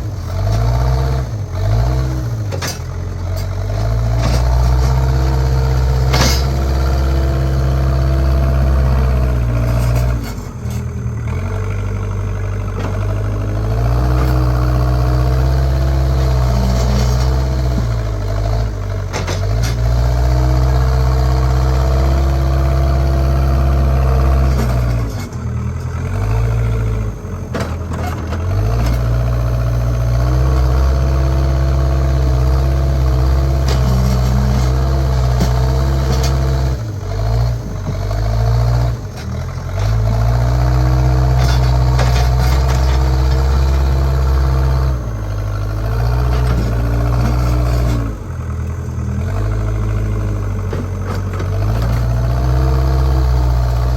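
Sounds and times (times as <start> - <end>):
diesel engine running under load: 0.0 - 53.9.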